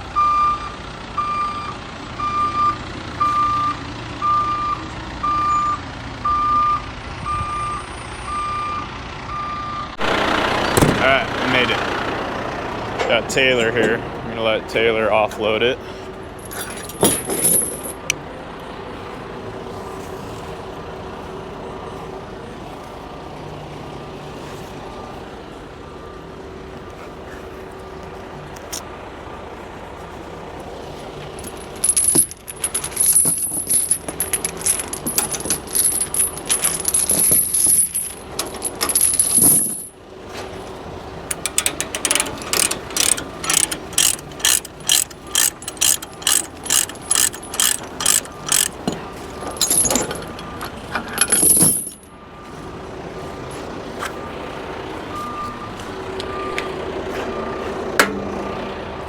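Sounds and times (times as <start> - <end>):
diesel engine running: 0.0 - 59.0
loud uneven metal clanking: 31.4 - 39.9, 41.3 - 52.1
rapid ratcheting clicks: 41.3 - 48.8.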